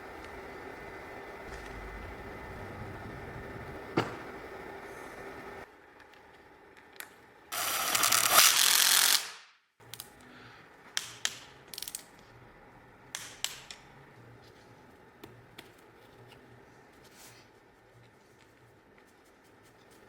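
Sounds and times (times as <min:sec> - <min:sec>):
loud hiss: 0:07.5 - 0:09.3.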